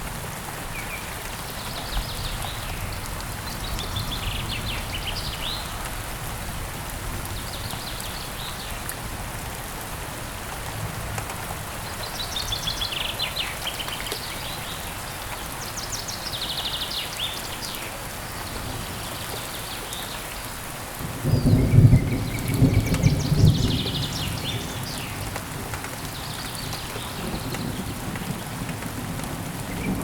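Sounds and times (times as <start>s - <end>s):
steady rain: 0.0s - 30.0s
low rumble of thunder: 21.0s - 30.0s.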